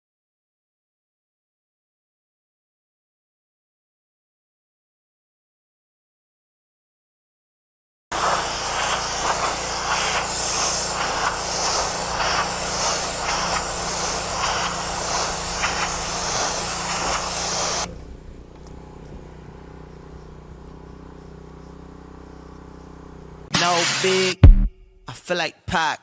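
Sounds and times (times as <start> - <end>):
pressure washer spraying: 8.1 - 24.3.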